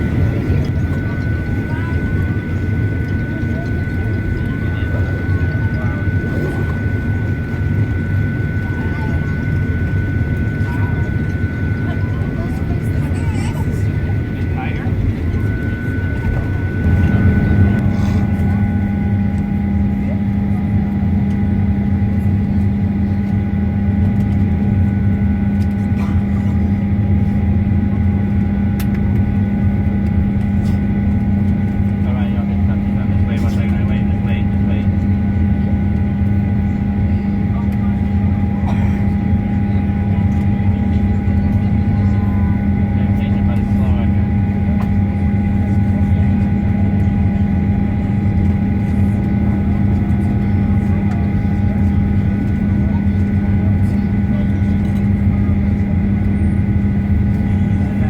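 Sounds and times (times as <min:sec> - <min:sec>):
air conditioning: 0:00.0 - 0:58.0
faint steady whine: 0:00.0 - 0:58.0
jet engines idling: 0:00.0 - 0:58.0
low hum: 0:00.0 - 0:58.0
faint thin whine: 0:00.1 - 0:20.6.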